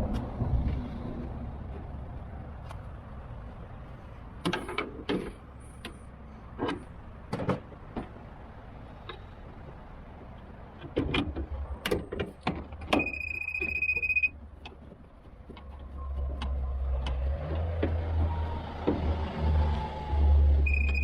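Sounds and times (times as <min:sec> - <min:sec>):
high steady beep: 0:13.0 - 0:14.4, 0:20.6 - 0:21.0.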